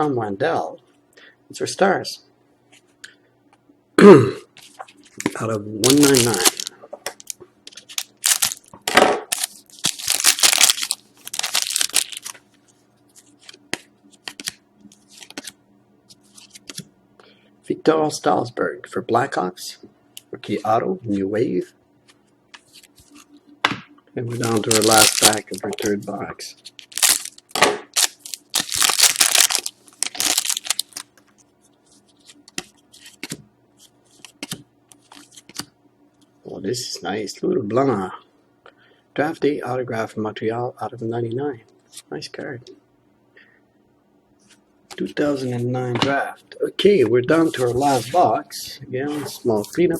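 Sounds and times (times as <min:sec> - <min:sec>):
cards rustling and tapping: 0:04.6 - 0:16.9, 0:24.4 - 0:26.0, 0:26.7 - 0:31.4, 0:32.0 - 0:35.7
wrapper ripping and crackling: 0:05.2 - 0:08.7, 0:09.3 - 0:12.4, 0:24.4 - 0:26.0, 0:26.8 - 0:31.1.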